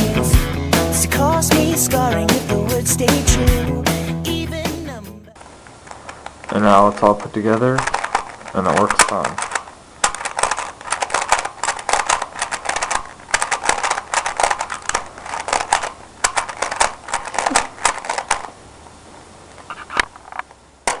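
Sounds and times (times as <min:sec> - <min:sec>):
plastic puzzle cube clicking: 0:05.9 - 0:18.6.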